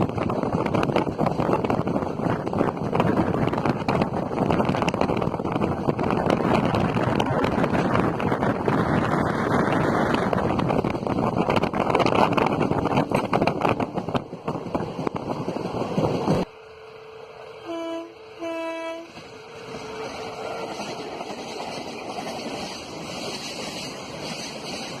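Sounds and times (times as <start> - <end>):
passing train rumble and clatter: 0.0 - 25.0
locomotive horn: 17.6 - 19.2.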